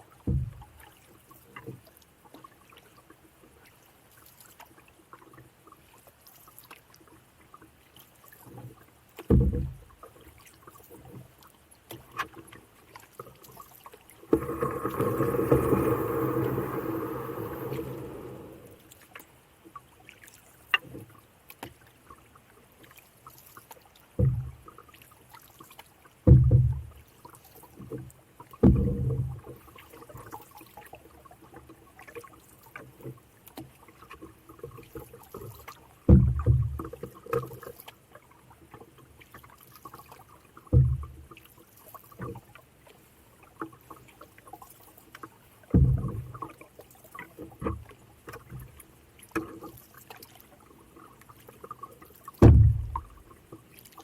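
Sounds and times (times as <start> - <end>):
paddle strokes in water: 0.0 - 54.0
faint ticks: 20.7 - 21.9.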